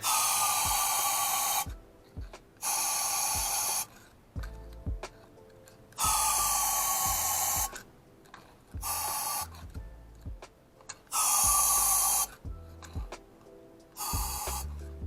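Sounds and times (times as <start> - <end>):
compressed air blow gun hissing: 0.0 - 1.7, 2.6 - 3.9, 6.0 - 7.8, 8.8 - 9.6, 11.1 - 12.4, 14.0 - 14.8.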